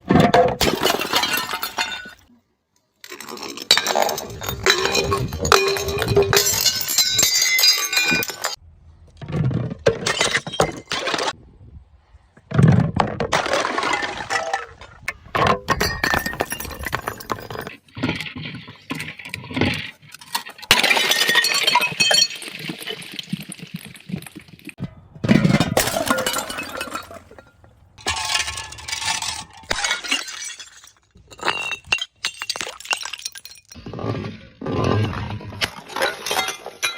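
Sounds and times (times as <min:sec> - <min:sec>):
glass bottles shattering: 0:00.5 - 0:02.3, 0:03.0 - 0:08.6, 0:09.9 - 0:11.4, 0:13.3 - 0:17.7, 0:20.2 - 0:23.6, 0:24.8 - 0:33.8, 0:35.6 - 0:36.9
broken glass shards clinking: 0:03.4 - 0:08.6, 0:25.4 - 0:33.8.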